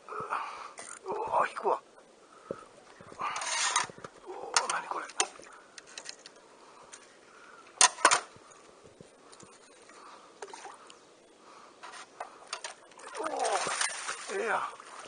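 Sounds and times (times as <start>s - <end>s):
clicks and knocks of fishing tackle: 3.5s - 7.0s.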